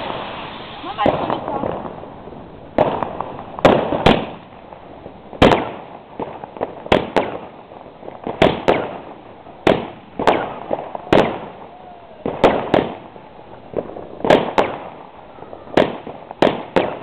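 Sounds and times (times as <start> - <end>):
firework bangs with crackling: 0.0 - 17.0.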